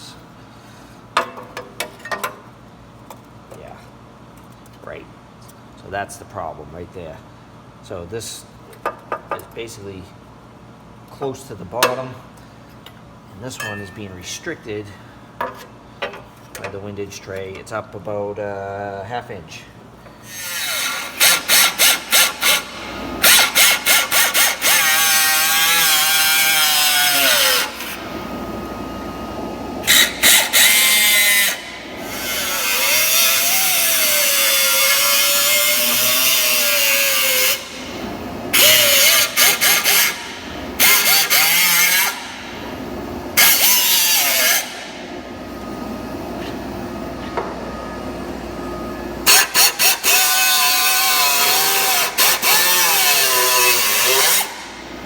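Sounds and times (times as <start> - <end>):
power tool cutting steel: 20.2 - 28.8, 29.8 - 42.7, 43.3 - 45.1, 49.2 - 55.0.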